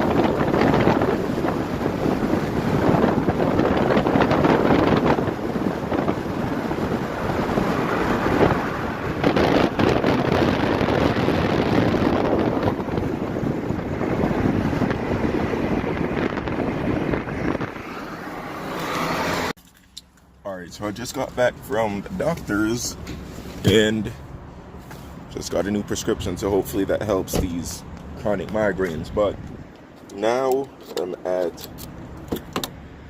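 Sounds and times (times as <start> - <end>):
wind buffeting microphone: 0.0 - 19.5, 26.2 - 30.0
car rushing noise: 0.0 - 19.6.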